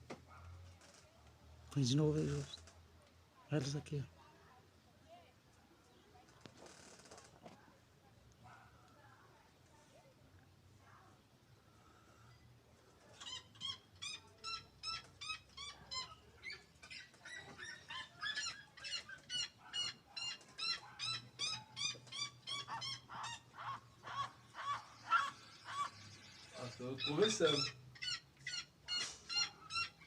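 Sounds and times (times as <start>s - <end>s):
birds yelping calls: 13.0s - 30.0s.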